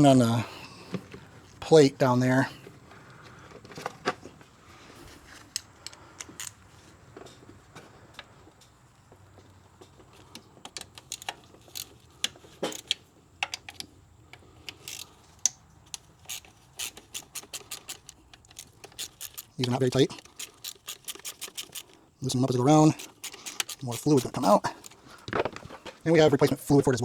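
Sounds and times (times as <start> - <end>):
hand tools tapping metal: 10.2 - 26.7.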